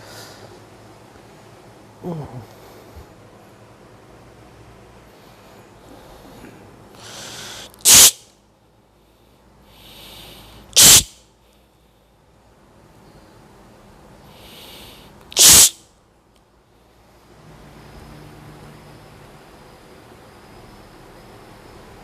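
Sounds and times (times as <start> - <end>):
person breathing forcefully: 0.0 - 0.6, 5.1 - 8.2, 9.0 - 12.0, 14.3 - 15.7.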